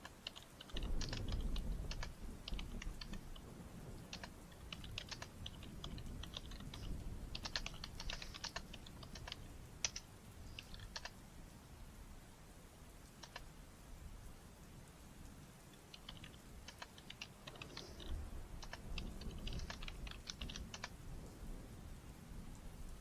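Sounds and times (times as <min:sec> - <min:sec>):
typing on computer keyboard: 0:00.0 - 0:03.4, 0:04.0 - 0:11.1, 0:13.2 - 0:13.4, 0:15.8 - 0:20.9.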